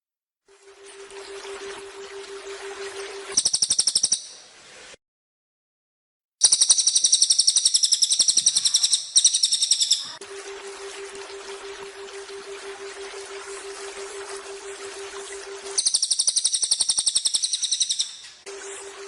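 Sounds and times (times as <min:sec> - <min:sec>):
songbird trilling: 0:06.4 - 0:10.2, 0:15.8 - 0:18.2.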